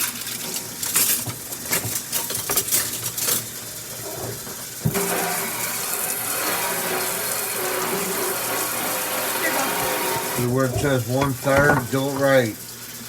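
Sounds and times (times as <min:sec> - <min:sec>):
tap water running into sink: 0:00.0 - 0:13.0
dishes clinking: 0:09.8 - 0:12.6.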